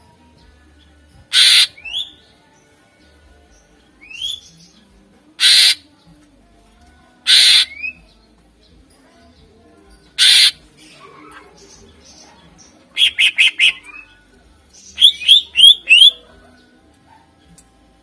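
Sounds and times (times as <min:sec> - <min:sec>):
bird harsh rasping calls: 0:01.3 - 0:02.2, 0:05.4 - 0:05.9, 0:07.2 - 0:08.0, 0:10.1 - 0:12.2, 0:12.9 - 0:14.2, 0:14.8 - 0:16.2.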